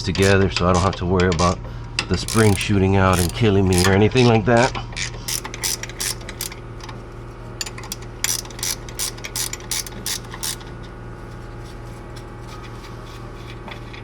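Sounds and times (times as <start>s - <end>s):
ratcheting wrench clicking: 2.2s - 4.0s, 5.2s - 7.0s, 7.6s - 10.7s.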